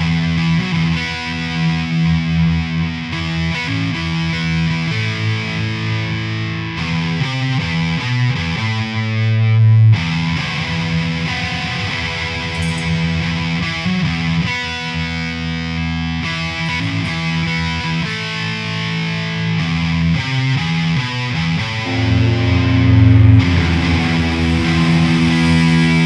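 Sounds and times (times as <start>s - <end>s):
distorted electric guitar riffing: 21.0s - 26.0s
hard rock band playing live: 21.8s - 26.0s.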